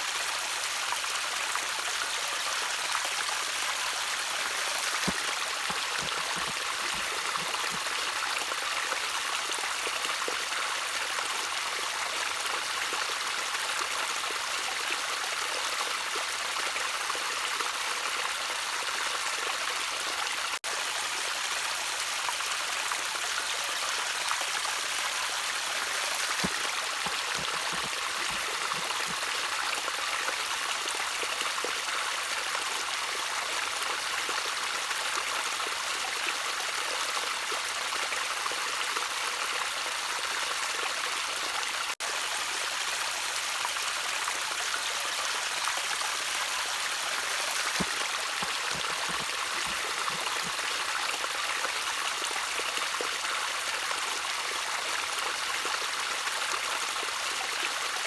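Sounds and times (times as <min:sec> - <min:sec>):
water trickling: 0:03.8 - 0:09.9, 0:24.6 - 0:30.8, 0:46.8 - 0:51.3.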